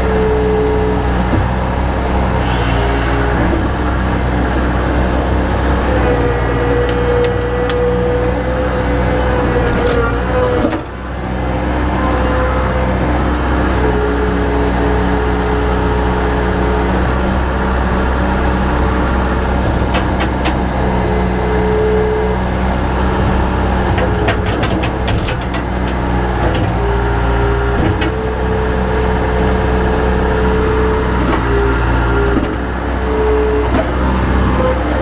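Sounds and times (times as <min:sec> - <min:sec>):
diesel engine running: 0:00.0 - 0:35.0
hydraulic whine changing pitch: 0:02.3 - 0:03.6.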